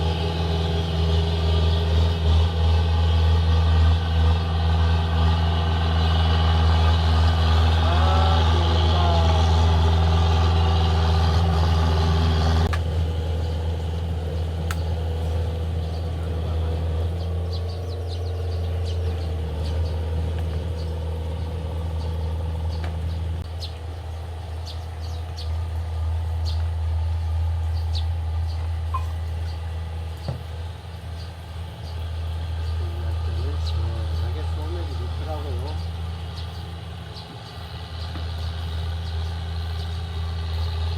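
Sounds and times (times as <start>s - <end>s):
low motor hum: 0.0s - 40.9s.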